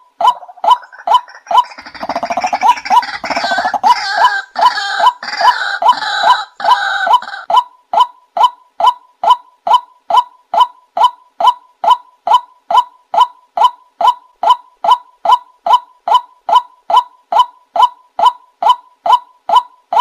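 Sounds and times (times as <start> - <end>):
waterhen calling: 0.0 - 7.6.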